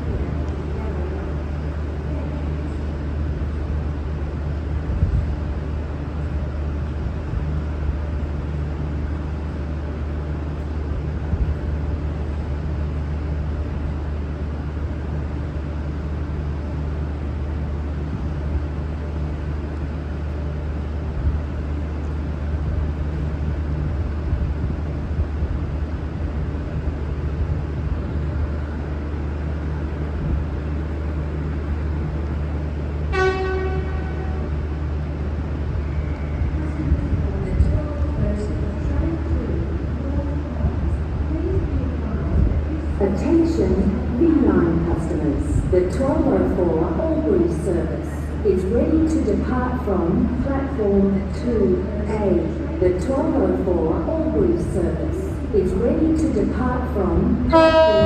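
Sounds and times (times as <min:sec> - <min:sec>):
diesel railcar engines idling: 0:00.0 - 0:58.0.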